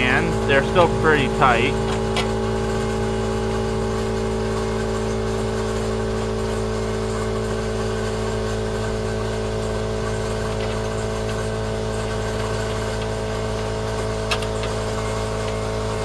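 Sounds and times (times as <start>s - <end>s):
machine hum: 0.0s - 16.0s.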